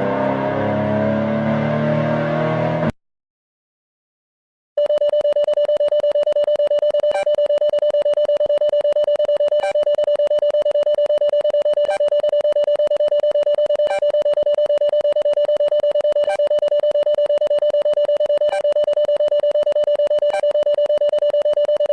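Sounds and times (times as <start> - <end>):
rapidly pulsing alarm tone: 4.8 - 21.9.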